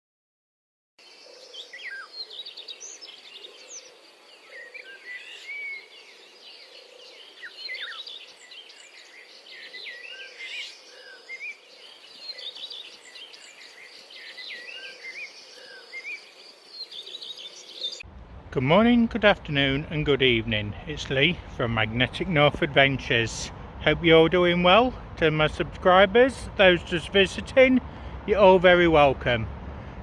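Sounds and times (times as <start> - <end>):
birds chirping in chorus: 1.0 - 18.1
outdoor background noise: 1.0 - 30.0.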